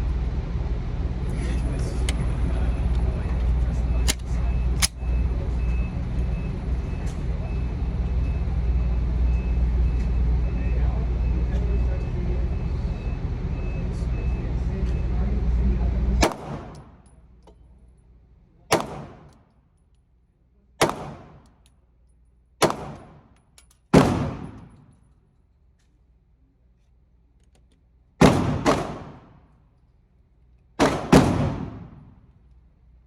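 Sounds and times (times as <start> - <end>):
pistol shots with echo: 16.2 - 17.0, 18.7 - 19.4, 20.8 - 21.5, 22.6 - 23.3, 23.9 - 24.8, 28.2 - 29.4, 30.8 - 32.2.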